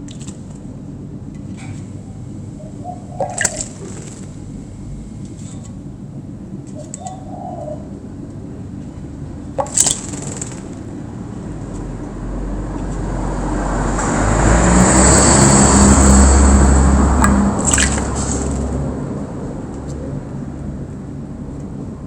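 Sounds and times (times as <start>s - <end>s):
vehicle passing: 7.7s - 22.0s.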